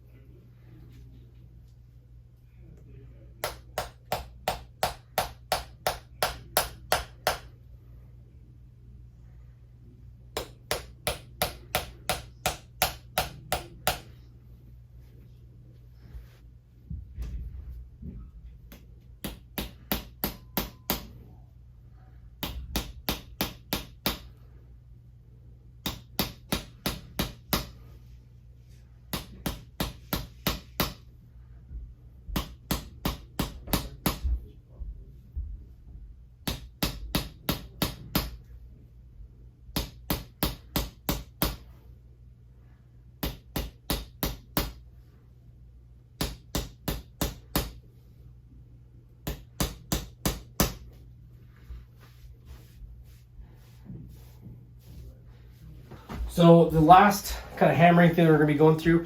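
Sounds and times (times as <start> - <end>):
low steady hum: 0.0 - 59.0
hammer tapping on body: 18.7 - 21.1, 22.4 - 24.3, 25.8 - 27.7, 29.1 - 31.0, 32.3 - 34.4, 36.4 - 38.4, 39.7 - 41.6, 43.2 - 44.8, 46.2 - 47.8, 49.2 - 50.9.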